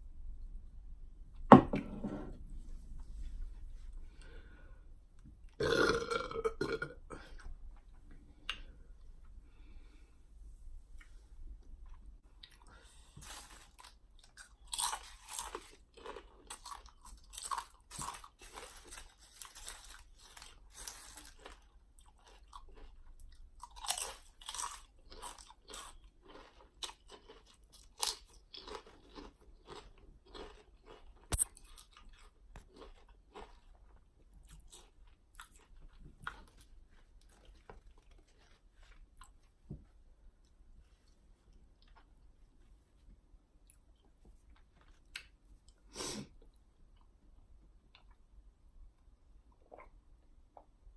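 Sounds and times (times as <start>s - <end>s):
crunching potato chips: 13.2s - 39.5s.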